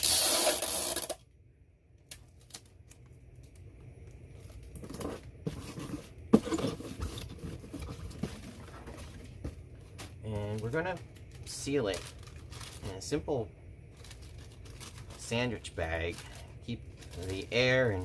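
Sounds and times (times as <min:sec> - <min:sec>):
plastic rustles and clicks: 0:02.0 - 0:13.1, 0:13.9 - 0:18.0
plastic packaging crinkling and tearing: 0:10.2 - 0:18.0.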